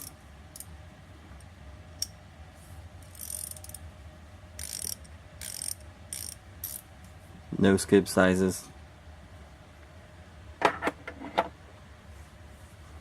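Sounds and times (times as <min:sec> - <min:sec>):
ratchet wrench clicking: 0:00.0 - 0:00.7, 0:03.0 - 0:03.8, 0:04.6 - 0:06.8.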